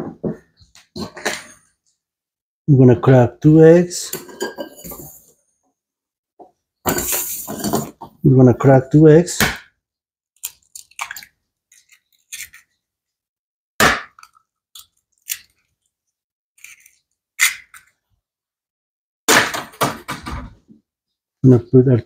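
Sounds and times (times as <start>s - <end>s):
eggs cracking against a bowl: 10.4s - 12.7s, 13.8s - 15.9s.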